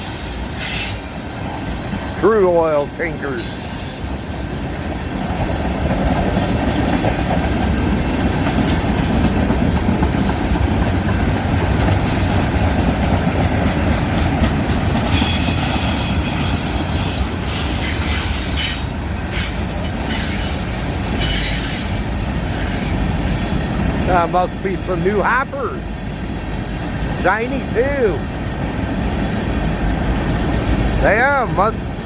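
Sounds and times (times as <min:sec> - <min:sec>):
wheels squealing: 0:00.0 - 0:05.0, 0:15.1 - 0:24.2
rumble of train wheels on rail: 0:00.0 - 0:32.0.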